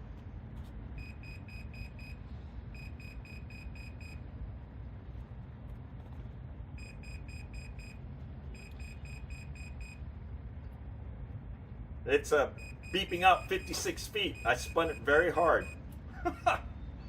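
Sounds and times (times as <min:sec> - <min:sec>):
low background rumble: 0:00.0 - 0:17.0
altimeter high beeps: 0:01.0 - 0:04.2, 0:06.8 - 0:08.0, 0:08.6 - 0:10.0, 0:12.5 - 0:15.8.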